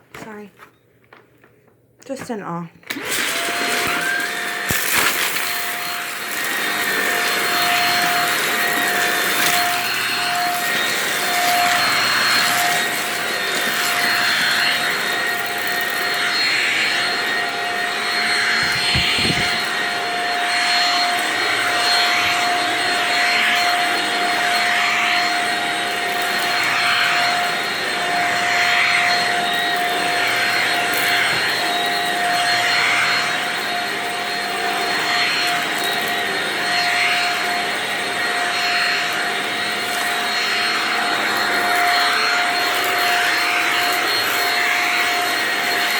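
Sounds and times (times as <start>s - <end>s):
vacuum cleaner running: 2.1s - 45.9s.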